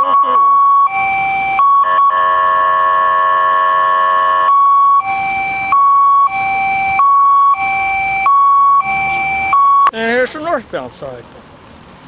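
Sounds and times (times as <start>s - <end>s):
electronic alarm siren: 0.0s - 9.9s.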